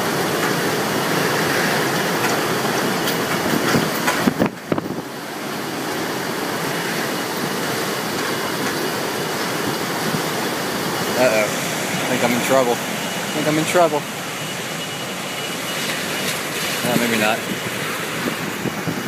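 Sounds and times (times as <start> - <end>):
wind buffeting microphone: 2.2 - 5.2, 16.2 - 19.0.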